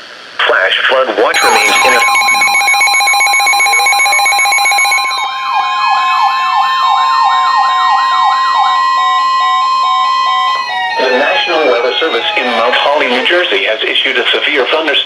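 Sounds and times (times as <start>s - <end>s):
pulsing tones: 1.4s - 5.2s
high attention tone: 1.4s - 5.3s
siren-like warble: 1.4s - 13.4s.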